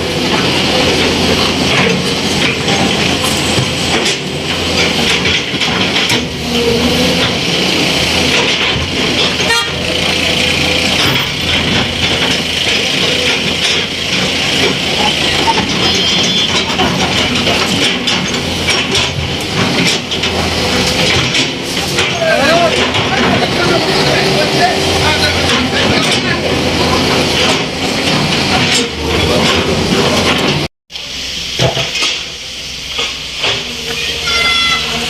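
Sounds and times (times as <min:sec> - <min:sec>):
constant clatter: 0:00.0 - 0:30.7
heavy road vehicles running: 0:00.0 - 0:35.0
horn toot: 0:34.0 - 0:35.0.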